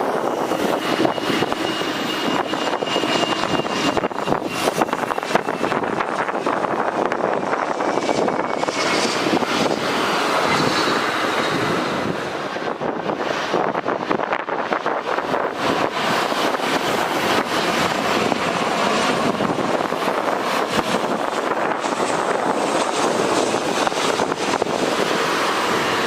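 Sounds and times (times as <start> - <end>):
jet engines rushing with high whine: 0.0 - 26.0.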